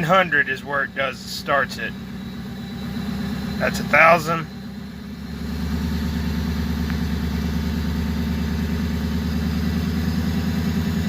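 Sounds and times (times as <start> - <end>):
truck engine misfiring: 0.0 - 11.0.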